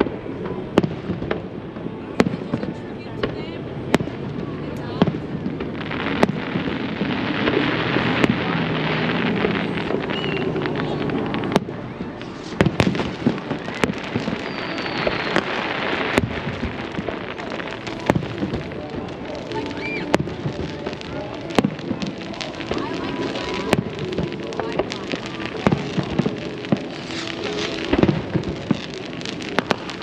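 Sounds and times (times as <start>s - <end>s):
fireworks crackling: 0.0s - 30.0s
firework shell bursts: 24.8s - 30.0s.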